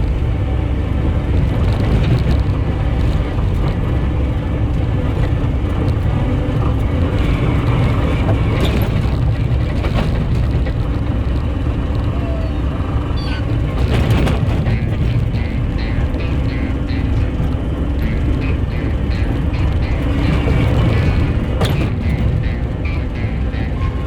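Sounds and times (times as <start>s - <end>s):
skid steer engine drone: 0.0s - 24.0s.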